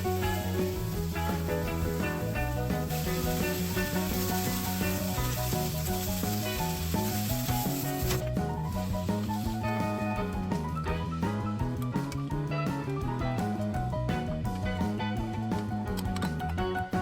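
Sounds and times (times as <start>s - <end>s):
food sizzling in a pan: 0.0s - 10.0s
background music: 0.0s - 17.0s.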